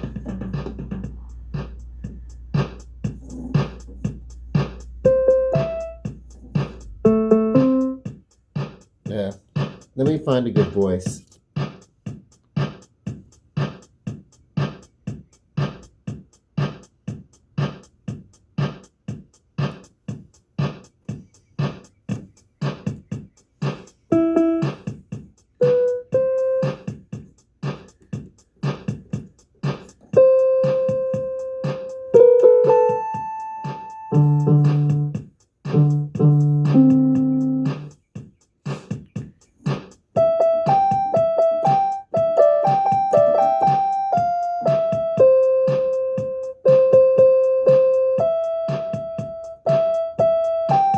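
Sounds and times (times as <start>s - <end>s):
keyboard notes and chords: 0.0s - 8.8s, 20.6s - 50.9s
keyboard rhythm pattern: 0.0s - 50.9s.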